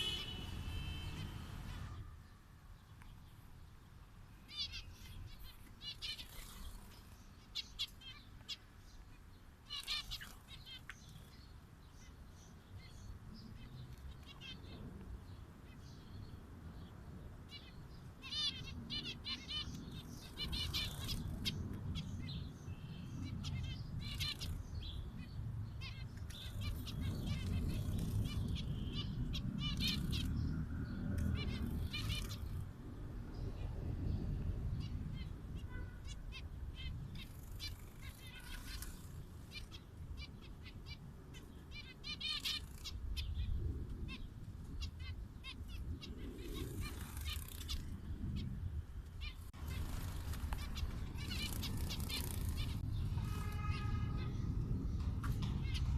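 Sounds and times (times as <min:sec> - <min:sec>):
finches chirping: 0:04.5 - 0:16.9, 0:17.5 - 0:32.6, 0:34.8 - 0:48.6, 0:49.2 - 0:54.6.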